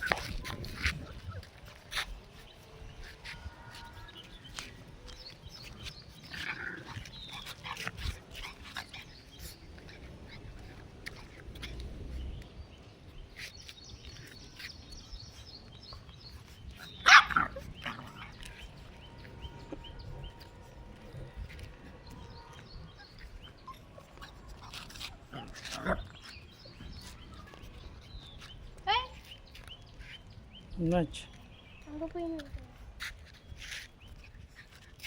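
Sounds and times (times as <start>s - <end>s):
puppy barking: 17.0s - 18.4s.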